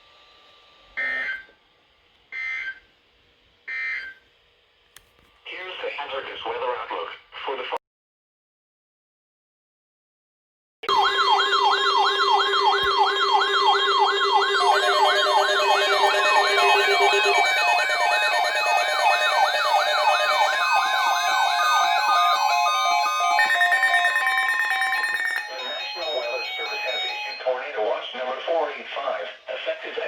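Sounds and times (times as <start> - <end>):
electronic siren yelp: 10.8 - 27.8
electronic tones: 10.9 - 27.5
steady high tone: 10.9 - 28.4.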